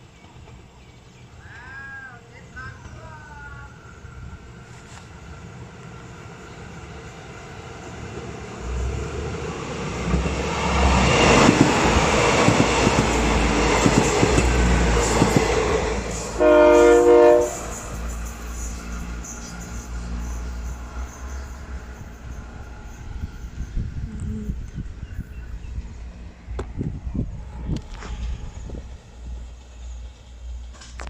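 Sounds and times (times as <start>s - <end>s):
passenger train rumbling past: 0.0s - 31.0s
train horn blast: 16.2s - 17.8s.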